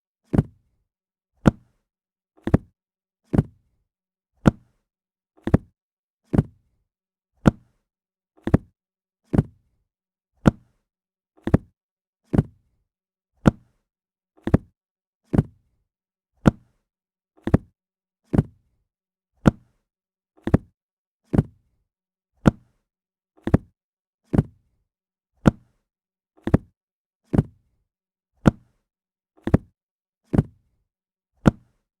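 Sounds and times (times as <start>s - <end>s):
book thudding on hard surface: 0.3s - 0.6s, 2.4s - 2.7s, 3.3s - 3.6s, 4.4s - 4.6s, 5.4s - 5.7s, 6.3s - 6.6s, 7.4s - 7.7s, 8.4s - 8.7s, 9.3s - 9.6s, 10.4s - 10.7s, 11.4s - 11.7s, 12.3s - 12.6s, 13.4s - 13.7s, 14.4s - 14.7s, 15.3s - 15.6s, 16.4s - 16.7s, 17.4s - 17.7s, 18.3s - 18.6s, 19.5s - 19.7s, 20.4s - 20.7s, 21.3s - 21.6s, 22.4s - 22.7s, 23.4s - 23.7s, 24.3s - 24.6s, 25.4s - 25.7s, 26.4s - 26.7s, 27.3s - 27.6s, 28.4s - 28.7s, 29.4s - 29.7s, 30.3s - 30.6s, 31.4s - 31.7s.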